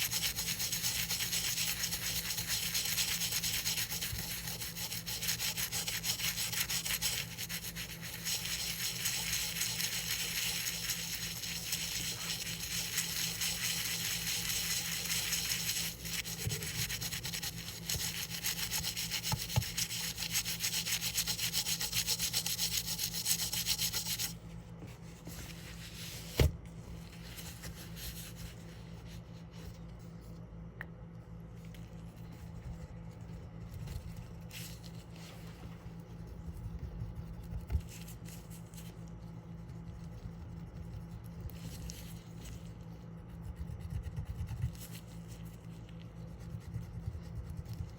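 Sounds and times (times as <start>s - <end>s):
rapid scrubbing on coin: 0.0s - 24.4s.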